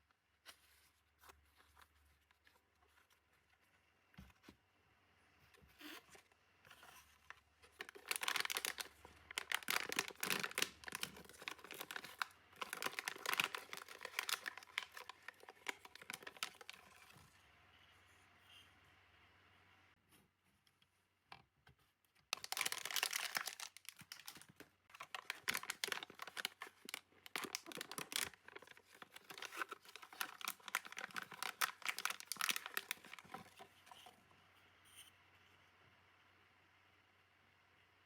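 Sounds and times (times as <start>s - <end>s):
packaging crinkling and tearing: 7.3s - 17.2s, 22.3s - 33.6s.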